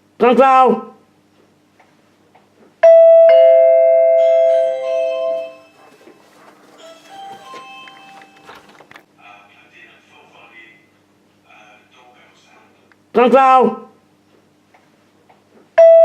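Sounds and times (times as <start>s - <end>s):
doorbell ding-dong chime: 2.8s - 5.8s, 6.9s - 8.5s, 15.8s - 16.0s.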